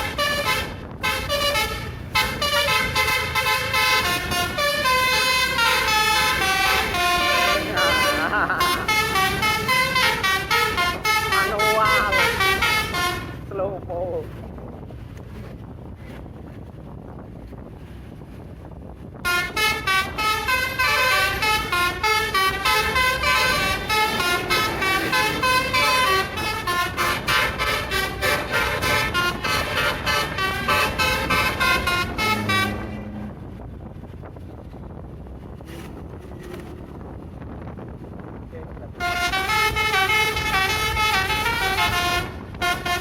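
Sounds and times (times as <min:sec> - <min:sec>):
musical bus horn melody: 0:00.0 - 0:13.5, 0:19.2 - 0:33.6, 0:39.0 - 0:43.0
low vehicle rumble: 0:00.0 - 0:43.0.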